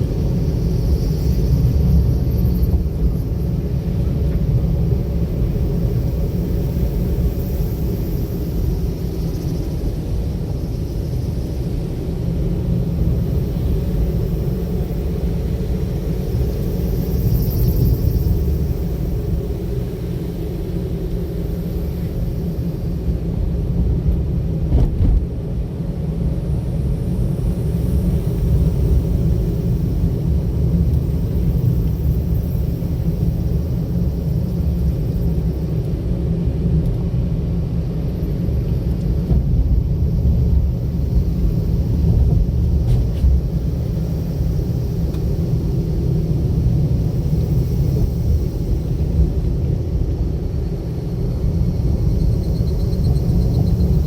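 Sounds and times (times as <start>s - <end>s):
car interior road and engine noise: 16.9s - 26.8s.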